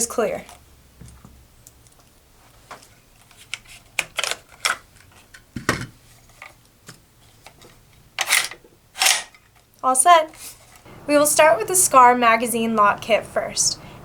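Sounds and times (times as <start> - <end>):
rifle mechanism clicking and clacking: 8.2 - 9.6.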